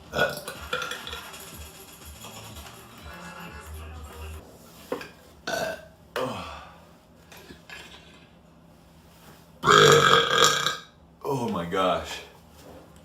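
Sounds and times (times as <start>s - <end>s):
man burping: 0.0s - 0.9s, 5.5s - 6.7s, 9.6s - 10.9s.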